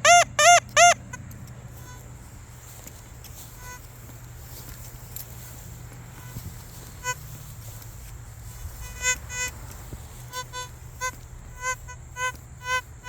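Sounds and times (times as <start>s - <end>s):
metal detector beeps: 0.0s - 2.1s, 3.2s - 4.0s, 6.1s - 13.0s
low steady hum: 0.0s - 13.0s.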